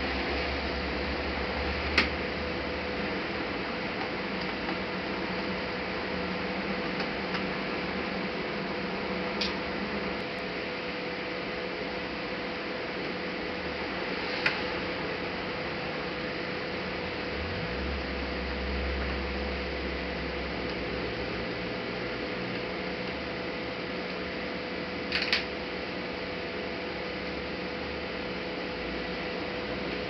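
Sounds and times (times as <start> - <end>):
steady hiss with low hum: 0.0 - 30.0.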